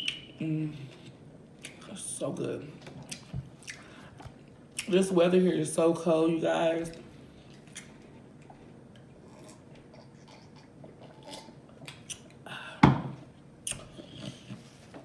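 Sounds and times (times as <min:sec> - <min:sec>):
faint chewing with mouth clicks: 0:00.9 - 0:01.9, 0:02.8 - 0:04.9, 0:06.9 - 0:12.4.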